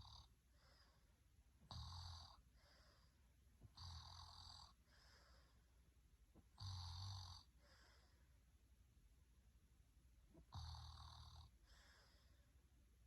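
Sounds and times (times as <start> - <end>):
soft breaths: 0.0 - 1.4, 2.4 - 3.8, 4.7 - 6.6, 7.4 - 8.5, 11.4 - 12.8
faint snoring: 0.0 - 5.7, 6.4 - 8.3, 10.4 - 12.5.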